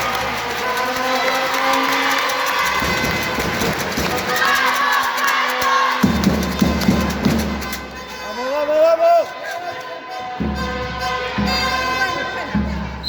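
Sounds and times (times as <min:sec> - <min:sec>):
crowd din: 0:00.0 - 0:13.0
people shouting and calling out: 0:00.0 - 0:13.0.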